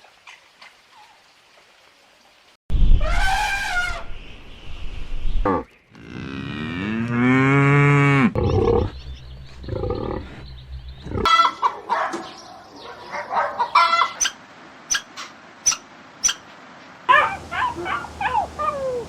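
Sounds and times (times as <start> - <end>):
cow mooing: 6.0 - 9.0
short sharp animal calls: 13.8 - 16.4.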